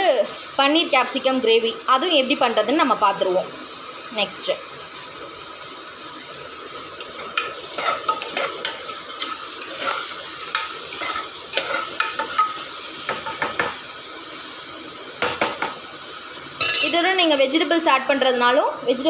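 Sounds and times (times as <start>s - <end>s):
onions sizzling in ghee: 0.0s - 19.0s
spoon scraping metal pot: 7.2s - 12.6s, 16.6s - 17.0s.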